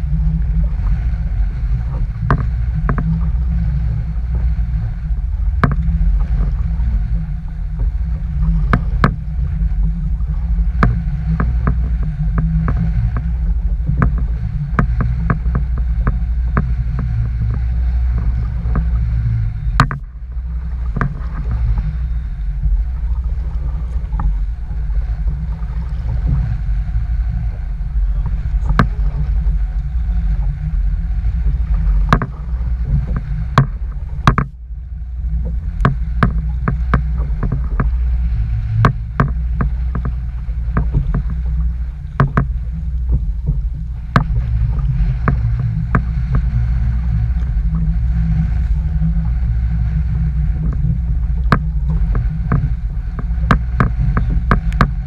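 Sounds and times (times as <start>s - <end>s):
wind buffeting microphone: 0.0s - 55.0s
sharp clicks and knocks: 1.9s - 3.2s, 5.5s - 6.6s, 7.8s - 9.2s, 10.7s - 19.1s, 19.7s - 20.1s, 20.8s - 21.8s, 28.2s - 29.9s, 31.7s - 34.6s, 35.4s - 38.0s, 38.8s - 46.5s, 50.6s - 55.0s.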